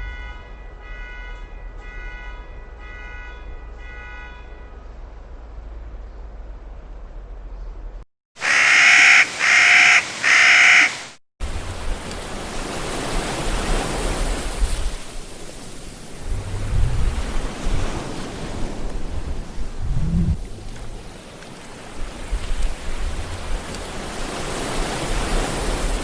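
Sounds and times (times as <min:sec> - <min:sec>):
harsh bird calls: 0:08.4 - 0:11.2
sea waves washing on shore: 0:08.4 - 0:19.8, 0:20.5 - 0:26.0.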